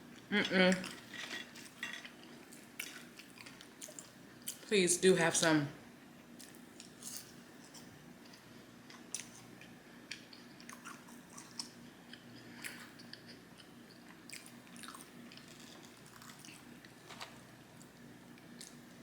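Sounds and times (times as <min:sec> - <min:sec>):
faint low hum: 0:00.0 - 0:19.0
chewing and biting: 0:06.4 - 0:17.4.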